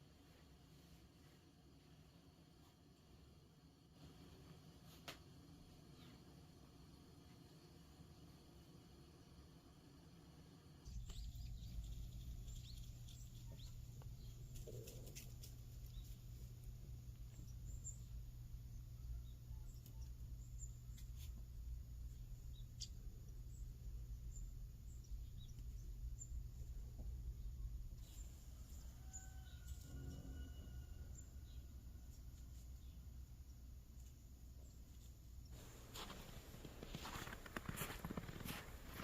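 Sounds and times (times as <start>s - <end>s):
steady low rumble: 10.8s - 28.5s
small birds chirping: 10.8s - 29.7s.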